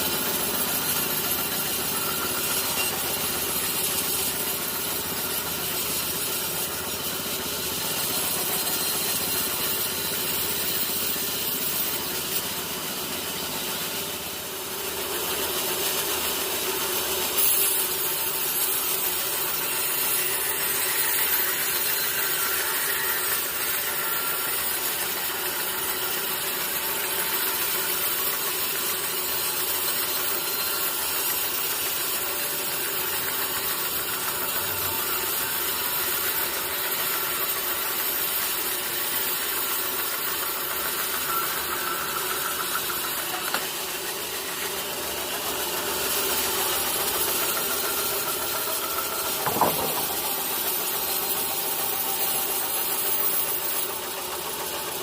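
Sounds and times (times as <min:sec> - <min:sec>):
sawmill machinery idling: 0:00.0 - 0:55.0
sharp knock: 0:49.4 - 0:50.1.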